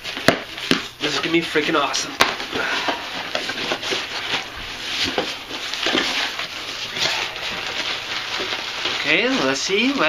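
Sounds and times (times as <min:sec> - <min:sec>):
packaging rustling and crinkling: 0:00.0 - 0:10.0
small clicks and crackles: 0:05.0 - 0:10.0.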